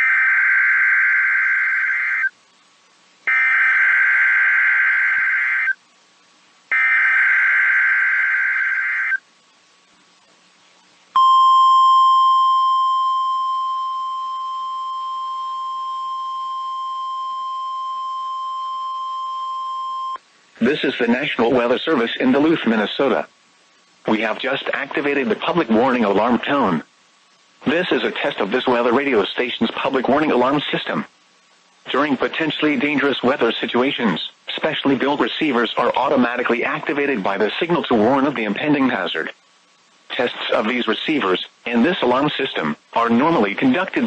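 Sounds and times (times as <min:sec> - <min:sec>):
warbling data bursts: 0:00.0 - 0:02.4, 0:03.3 - 0:05.8, 0:06.7 - 0:09.2
steady alarm tone: 0:03.3 - 0:05.8, 0:06.7 - 0:09.2, 0:11.2 - 0:20.2.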